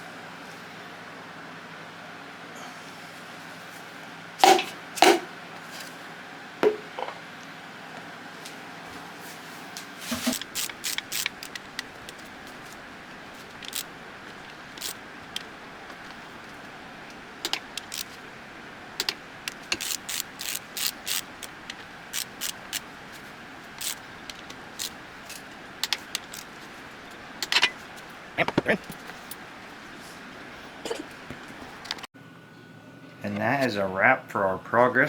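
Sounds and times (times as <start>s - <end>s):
socket wrench clicking: 10.3s - 12.8s, 13.5s - 16.2s, 17.4s - 18.2s, 19.0s - 23.0s, 23.7s - 27.8s.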